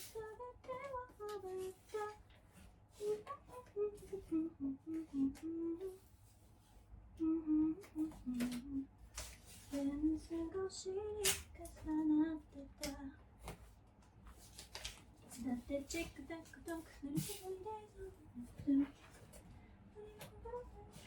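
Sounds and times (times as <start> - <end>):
woman humming: 3.0 - 6.1, 7.2 - 8.9.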